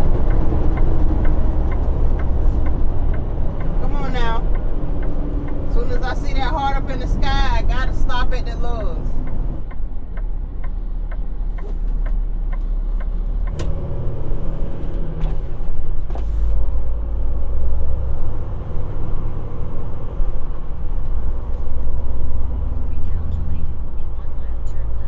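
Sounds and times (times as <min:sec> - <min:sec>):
regular ticking: 0:00.0 - 0:14.0
truck engine and road rumble: 0:00.0 - 0:25.0.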